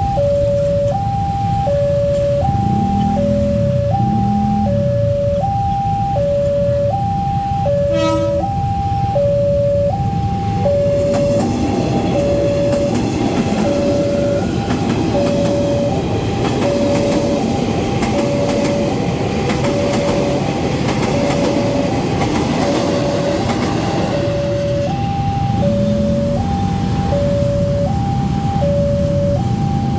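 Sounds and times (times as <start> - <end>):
level crossing alarm two-tone ding-dong: 0.0 - 17.4, 24.1 - 29.9
train wheels clattering over rails: 10.9 - 25.2.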